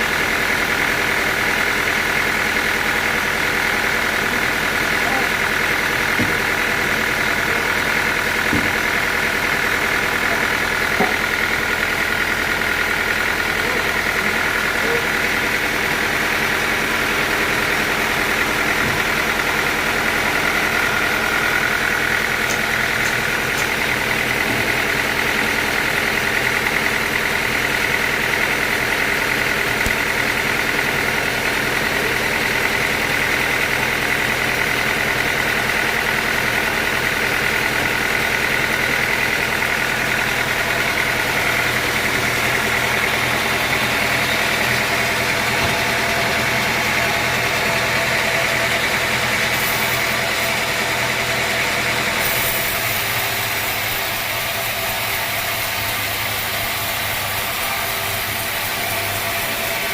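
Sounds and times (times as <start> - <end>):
sawmill machinery hum: 0.0 - 59.9.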